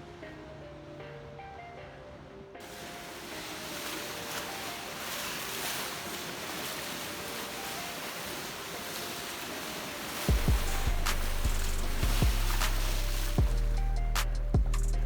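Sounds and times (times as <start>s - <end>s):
faint music notes: 0.0s - 15.0s
surf rushing: 0.0s - 15.0s
wind: 0.0s - 15.0s
bass-heavy music beat: 10.3s - 15.0s.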